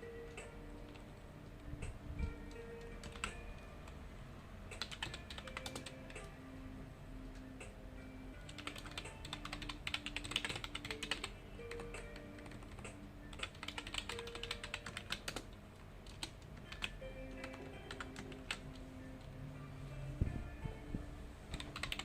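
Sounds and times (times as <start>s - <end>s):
keyboard typing: 0.0s - 4.0s, 4.7s - 6.3s, 8.4s - 19.3s, 21.5s - 22.0s
soft background music: 0.0s - 22.0s.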